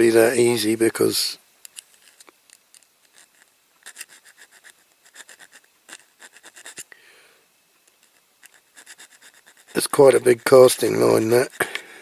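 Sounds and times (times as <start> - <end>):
hand file rasping on metal: 3.1 - 6.9, 8.0 - 11.9.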